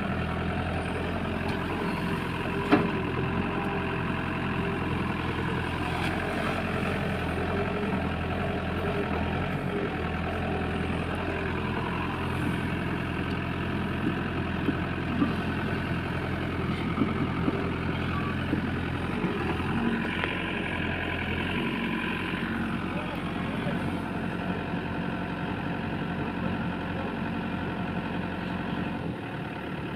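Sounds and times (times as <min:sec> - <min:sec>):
heavy diesel engine running: 0:00.0 - 0:29.9.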